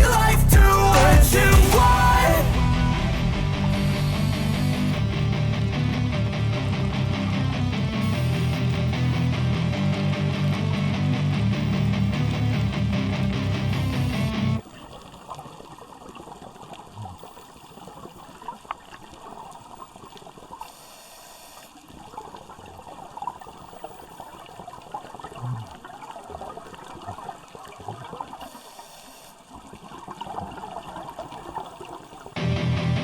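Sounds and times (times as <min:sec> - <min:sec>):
underwater water noise with crackling: 0:14.6 - 0:32.4.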